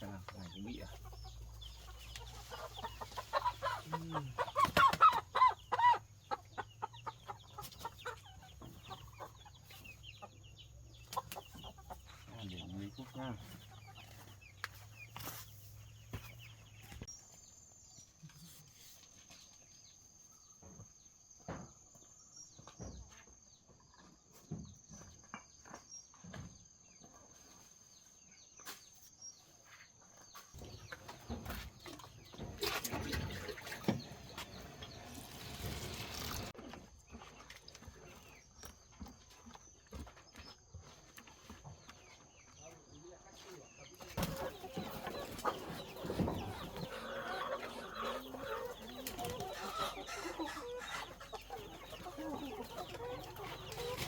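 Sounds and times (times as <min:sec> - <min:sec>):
rustling: 0:35.0 - 0:36.6.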